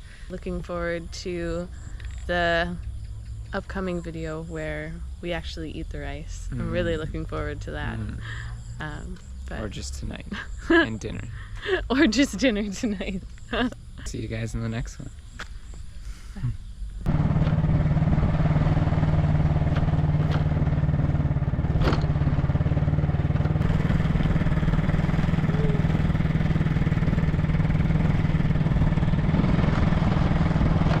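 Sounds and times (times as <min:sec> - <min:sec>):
small engine running: 0:06.5 - 0:08.6, 0:17.1 - 0:31.0.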